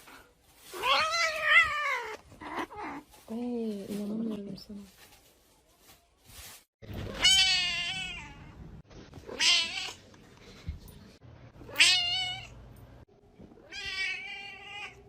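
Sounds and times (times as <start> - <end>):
cat meowing: 13.6 - 15.0.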